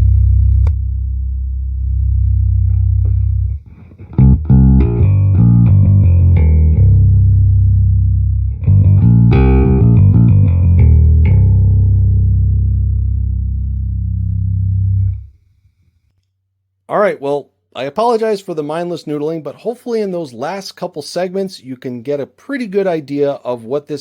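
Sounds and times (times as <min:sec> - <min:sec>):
electric bass playing: 0:00.0 - 0:15.4.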